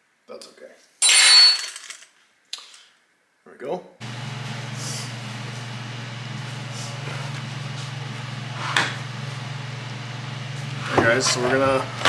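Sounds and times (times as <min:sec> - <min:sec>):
low background hum: 0:04.0 - 0:12.0.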